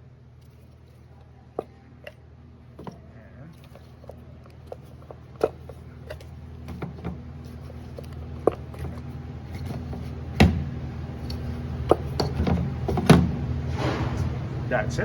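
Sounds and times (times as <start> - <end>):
hand tools clicking and knocking: 1.6 - 13.4.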